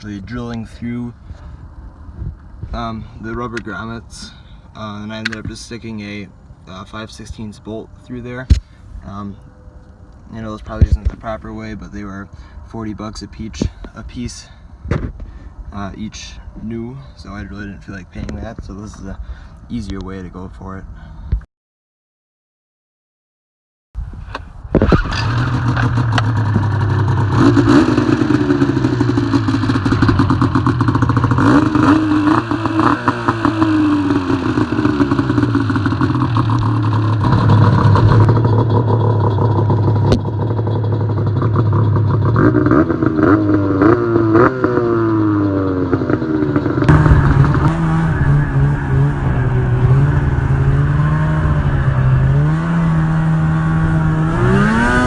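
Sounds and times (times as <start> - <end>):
snowmobile engine revving: 24.8 - 55.0.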